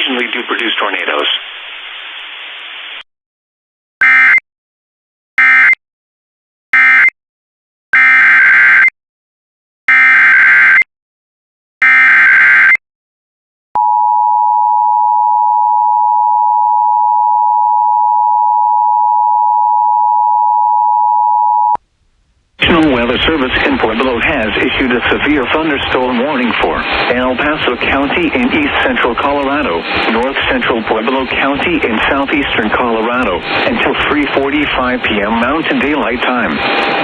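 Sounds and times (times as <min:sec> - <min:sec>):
single-pitch alarm tone: 0:13.8 - 0:21.8.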